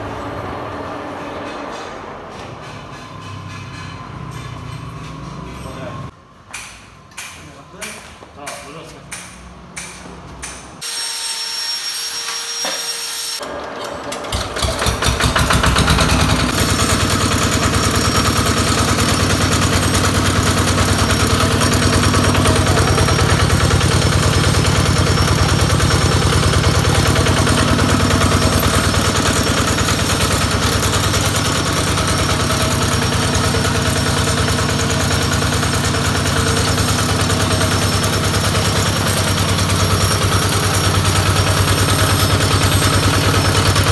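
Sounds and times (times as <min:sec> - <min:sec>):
small tractor engine: 0:13.4 - 0:43.9.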